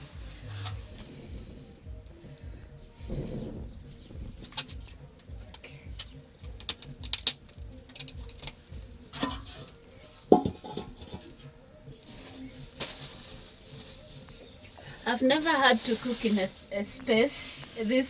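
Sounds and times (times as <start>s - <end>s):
kitchen work clicks and knocks: 9.2s - 11.4s.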